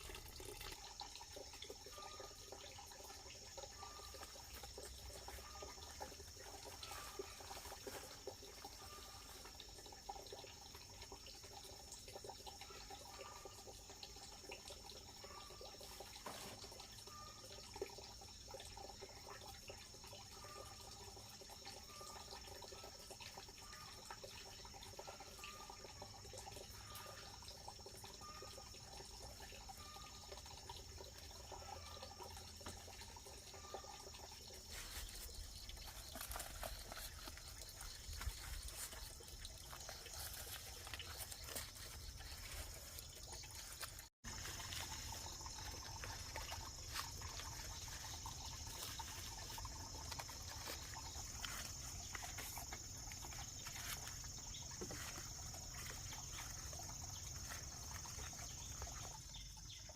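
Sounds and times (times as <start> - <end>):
insects chirring: 0.0 - 59.9.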